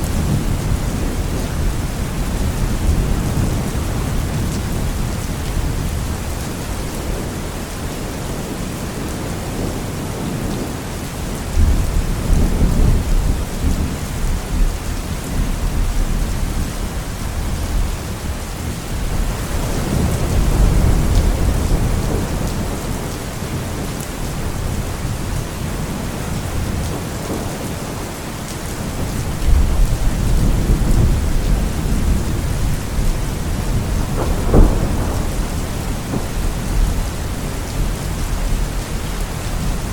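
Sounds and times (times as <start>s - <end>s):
rolling thunder: 0.0s - 7.7s, 11.5s - 27.6s, 28.7s - 39.9s
heavy rain: 0.0s - 39.9s.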